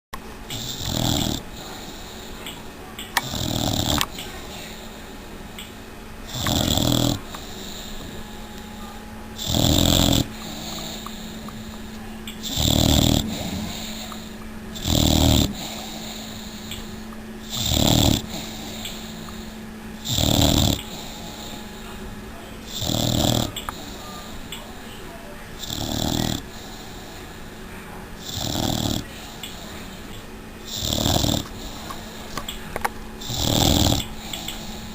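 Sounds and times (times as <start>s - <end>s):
puppy snoring: 0.5s - 2.4s, 3.2s - 4.9s, 6.3s - 8.3s, 9.4s - 22.0s, 22.7s - 24.5s, 25.6s - 27.3s, 28.2s - 30.0s, 30.7s - 32.3s, 33.2s - 34.9s.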